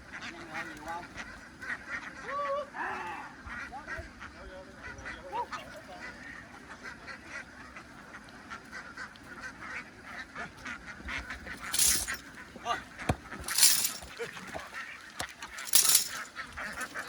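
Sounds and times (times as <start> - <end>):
ducks quacking: 0.0 - 2.7, 3.3 - 11.3.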